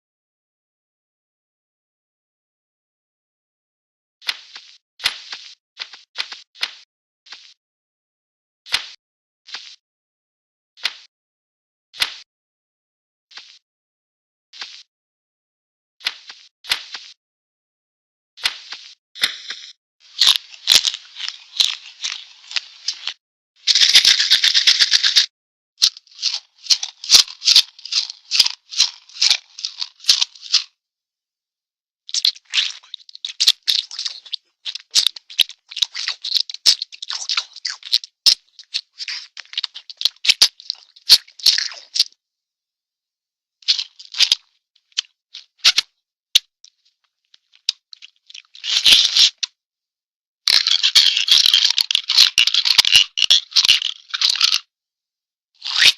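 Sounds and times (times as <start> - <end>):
cartoon rapid rattling clicks: 23.7 - 30.7, 50.5 - 54.6.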